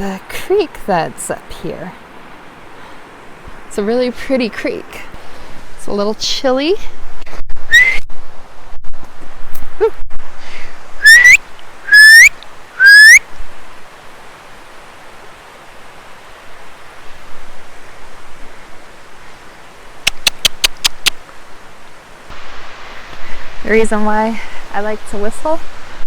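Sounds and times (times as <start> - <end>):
creek rushing: 0.0 - 6.6, 10.5 - 26.0
person whistling: 7.7 - 8.0, 11.0 - 13.2
sharp clicks: 20.0 - 21.2.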